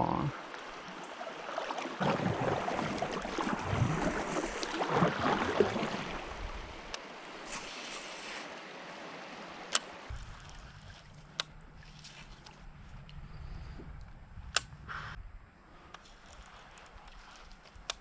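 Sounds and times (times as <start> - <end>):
water splashing around kayak: 0.3 - 14.0, 15.8 - 18.0.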